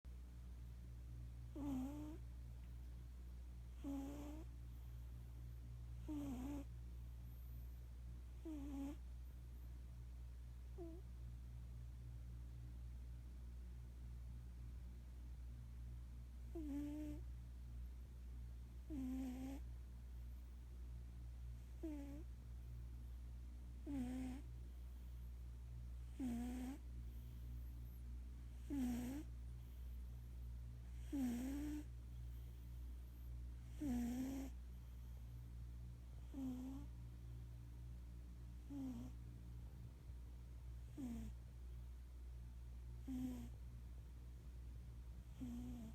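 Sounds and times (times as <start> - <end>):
cat snoring: 1.5 - 2.2, 3.7 - 4.5, 6.0 - 7.8, 8.4 - 9.0, 10.8 - 11.0, 16.5 - 17.3, 18.8 - 19.7, 21.6 - 22.3, 23.8 - 25.1, 26.0 - 30.0, 30.8 - 32.8, 33.6 - 35.0, 36.2 - 36.9, 38.6 - 39.2, 40.8 - 41.4, 43.0 - 43.6, 45.2 - 45.9.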